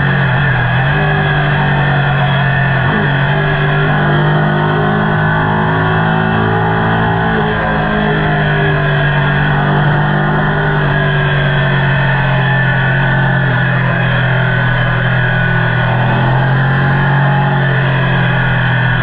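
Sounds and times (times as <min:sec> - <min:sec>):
motorcycle exhaust droning: 0:00.0 - 0:19.0.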